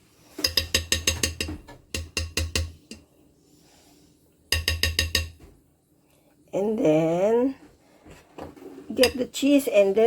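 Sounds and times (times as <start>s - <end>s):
mixer beaters knocking on bowl rim: 0.4s - 3.0s, 4.5s - 5.6s, 8.9s - 9.4s.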